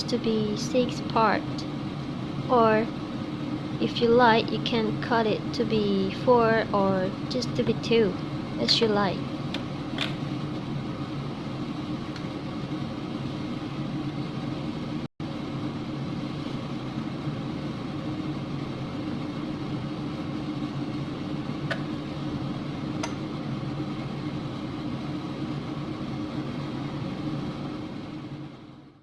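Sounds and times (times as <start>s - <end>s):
low mechanical hum: 0.0s - 29.0s.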